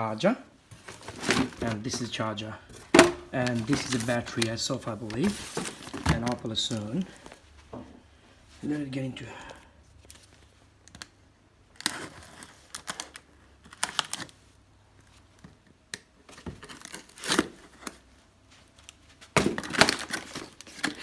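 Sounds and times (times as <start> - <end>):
packaging rustling and crinkling: 0.6 - 7.4, 16.3 - 21.0
packaging being torn open: 11.8 - 14.4.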